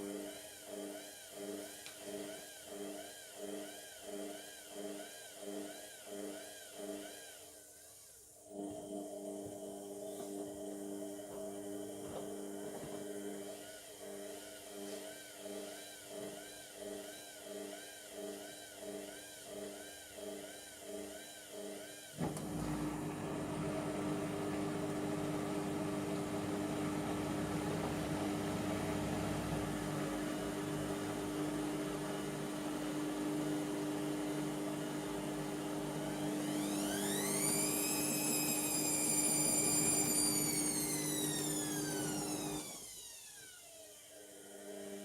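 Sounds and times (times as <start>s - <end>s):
washing machine motor whine: 8.5s - 14.4s, 22.2s - 45.0s
drain pump hum: 22.2s - 42.6s.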